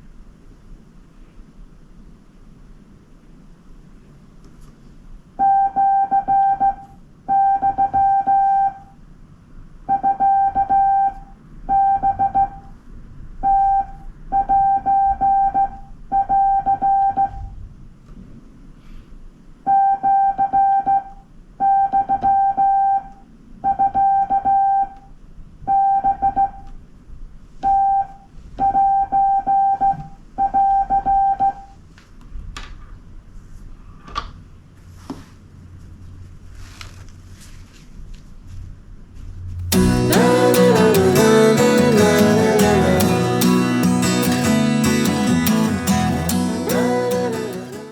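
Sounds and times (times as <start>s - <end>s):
morse code beeps: 5.4s - 8.9s, 9.9s - 12.7s, 13.4s - 17.5s, 19.7s - 25.0s, 25.7s - 26.7s, 27.6s - 31.8s.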